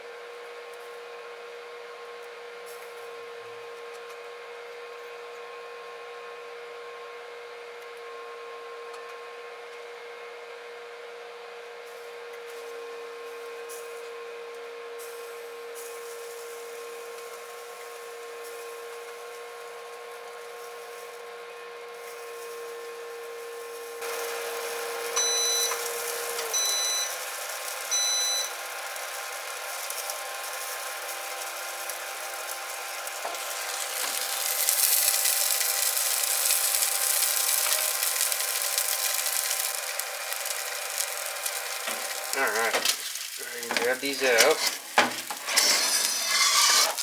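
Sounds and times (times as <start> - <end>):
convection fan running: 13.1 - 47.0
food sizzling on a tray: 15.0 - 21.3, 21.9 - 47.0
oven beeps: 22.9 - 43.0, 43.6 - 47.0.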